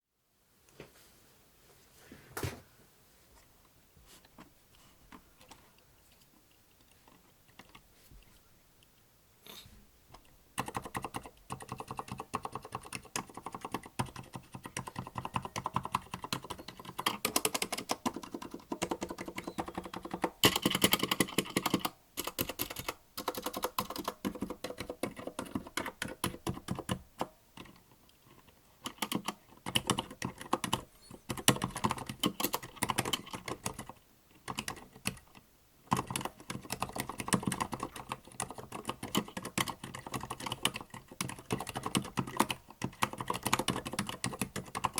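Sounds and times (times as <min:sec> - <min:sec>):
quiet mechanical keyboard typing: 0:10.1 - 0:44.9.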